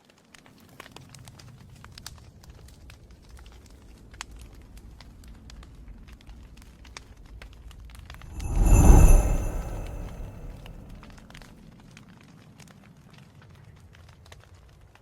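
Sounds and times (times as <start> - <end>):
low rumble of flames: 8.2 - 11.4.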